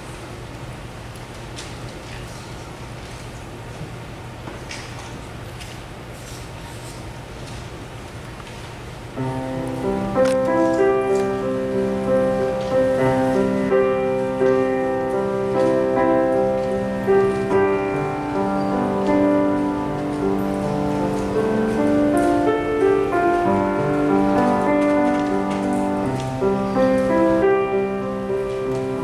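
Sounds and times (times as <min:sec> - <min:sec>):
slow instrumental music: 0:09.2 - 0:29.0.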